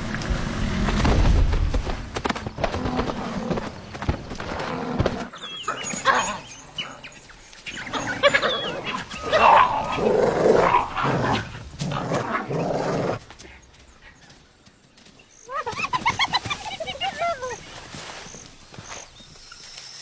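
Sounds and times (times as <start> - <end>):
dog barking and growling: 7.9 - 13.2.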